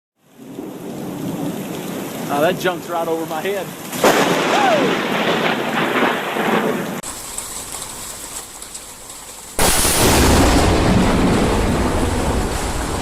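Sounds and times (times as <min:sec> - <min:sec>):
steady rain: 0:00.2 - 0:13.0
loud thunderclap rumbling: 0:00.4 - 0:02.8, 0:03.7 - 0:07.1, 0:09.6 - 0:13.0.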